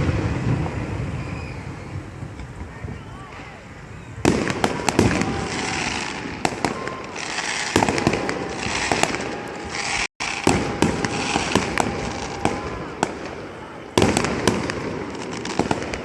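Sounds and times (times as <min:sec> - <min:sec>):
sharp gunpowder bangs: 0:04.2 - 0:16.0
background crackle: 0:04.3 - 0:16.0.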